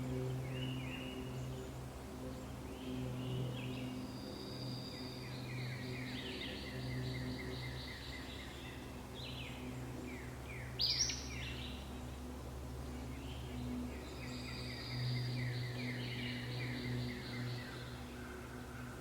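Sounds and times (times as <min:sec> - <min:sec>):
birds singing: 0:00.0 - 0:19.0
steady low hum: 0:00.0 - 0:19.0.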